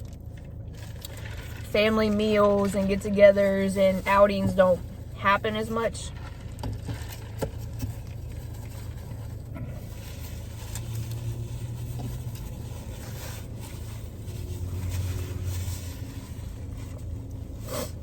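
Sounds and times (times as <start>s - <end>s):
food handling noises: 5.9s - 18.0s.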